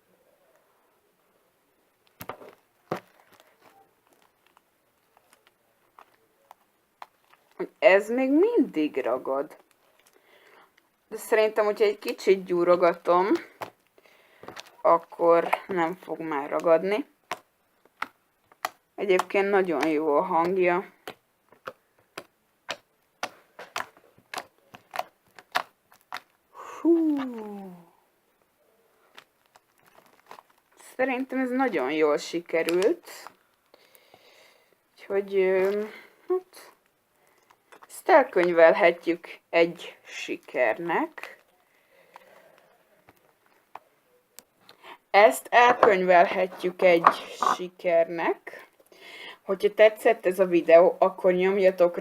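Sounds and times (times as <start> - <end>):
slime clicking and popping: 16.5 - 26.4.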